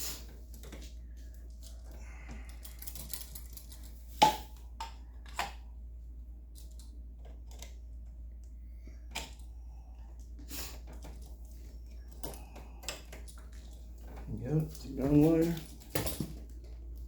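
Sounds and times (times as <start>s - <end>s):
hands handling electrical wires: 0.2s - 5.7s, 10.2s - 17.0s.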